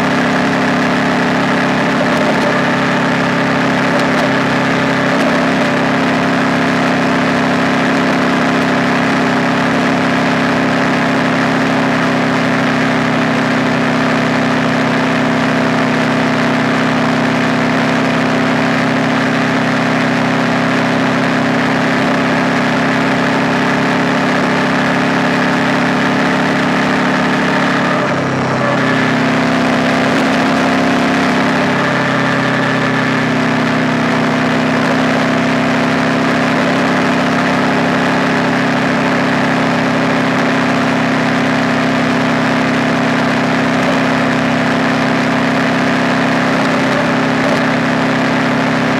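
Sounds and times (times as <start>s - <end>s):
motorcycle engine running steadily: 0.0s - 48.9s.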